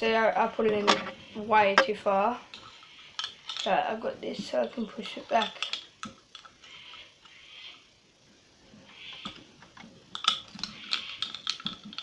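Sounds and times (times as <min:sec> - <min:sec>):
pocket knife parts rubbing: 0:00.6 - 0:03.8, 0:10.1 - 0:12.0.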